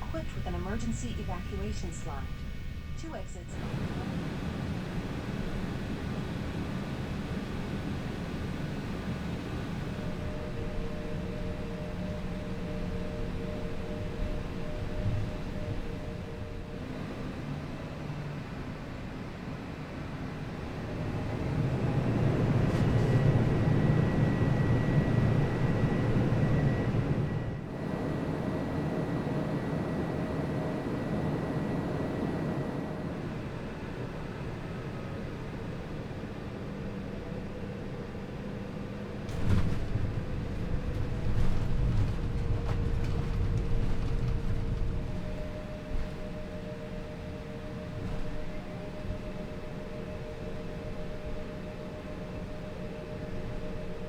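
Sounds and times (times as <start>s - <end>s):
jet engines rumbling: 0.0s - 18.6s, 19.3s - 37.2s.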